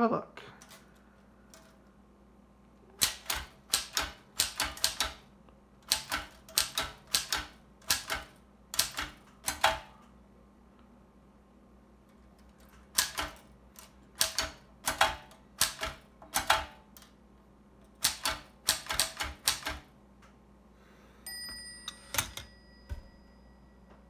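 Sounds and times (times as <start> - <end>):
typewriter type bars clacking: 3.0 - 5.2, 5.8 - 10.0, 12.5 - 17.0, 17.9 - 19.9
typewriter bell ringing: 21.3 - 23.8.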